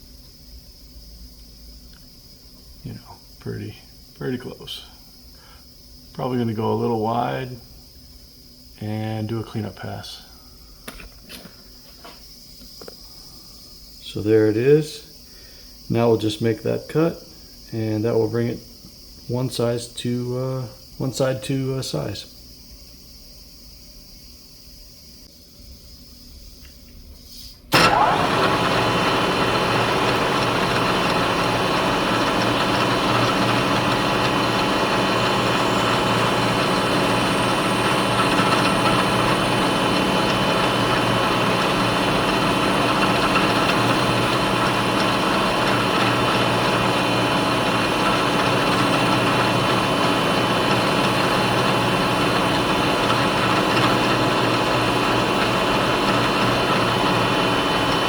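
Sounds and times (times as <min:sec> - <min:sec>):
milling machine spindle whining: 0:27.7 - 0:58.0.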